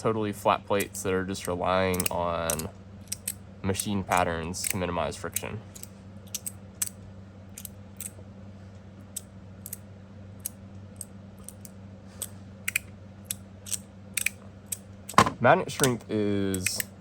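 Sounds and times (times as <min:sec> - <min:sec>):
magnetic slider metallic clicks: 0:01.9 - 0:07.0, 0:10.4 - 0:16.9.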